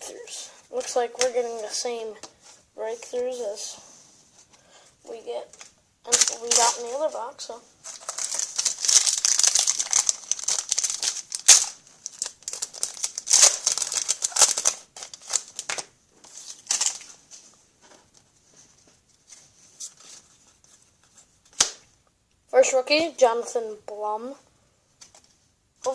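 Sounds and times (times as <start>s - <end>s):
wrapper tearing and crinkling: 6.1s - 7.0s, 7.8s - 17.1s.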